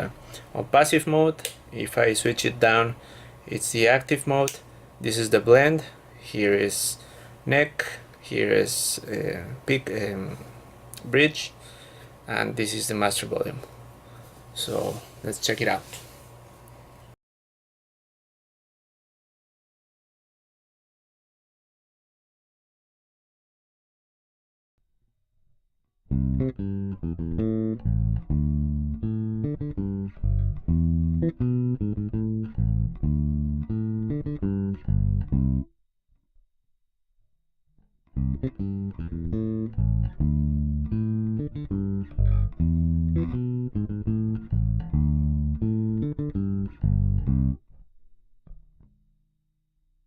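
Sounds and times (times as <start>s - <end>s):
electric bass plucked notes: 26.1s - 35.7s, 38.1s - 49.2s.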